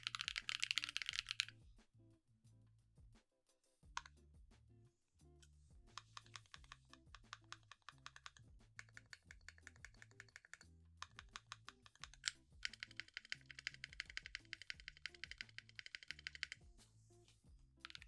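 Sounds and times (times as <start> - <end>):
mechanical keyboard typing: 0.0 - 1.5, 6.1 - 16.6.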